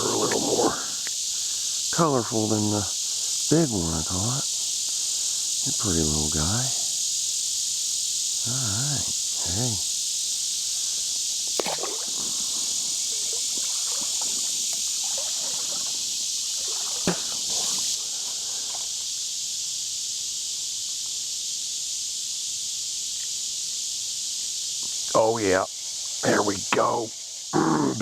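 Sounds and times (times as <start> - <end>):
insects droning: 0.0 - 28.0
water sloshing: 11.5 - 18.9.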